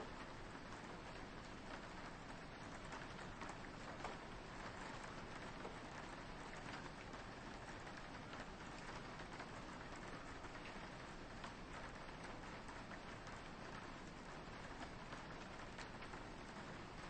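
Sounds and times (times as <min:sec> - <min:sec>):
rain on a window: 0:00.0 - 0:17.0.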